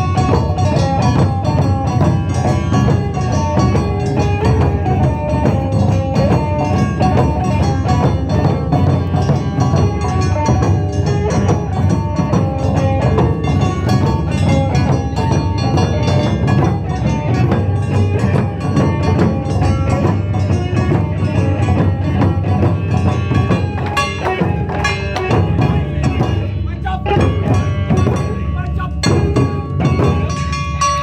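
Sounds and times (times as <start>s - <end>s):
clacking percussion: 0.0s - 31.0s
taiko drums: 0.0s - 31.0s.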